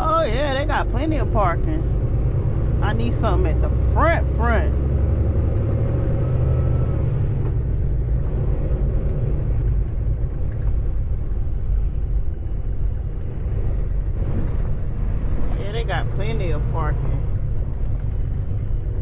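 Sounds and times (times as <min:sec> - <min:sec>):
diesel truck engine rumbling: 0:00.0 - 0:19.0.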